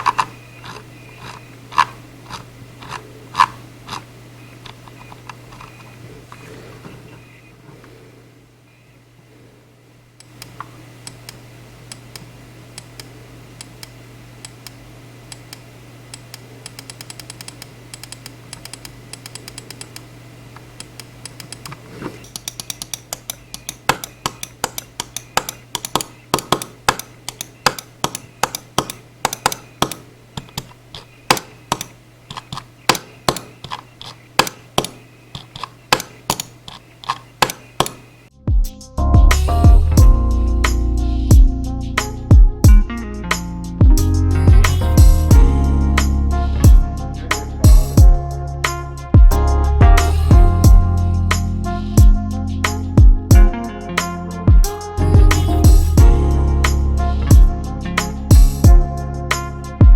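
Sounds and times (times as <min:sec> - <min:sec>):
mouse scroll wheel ticking: 0:15.3 - 0:20.1, 0:20.8 - 0:34.2
low hum: 0:38.3 - 0:59.9.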